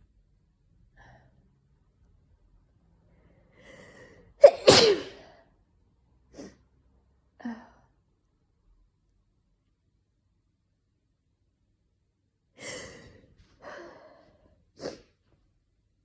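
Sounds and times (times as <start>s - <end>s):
person sneezing: 4.4s - 5.3s.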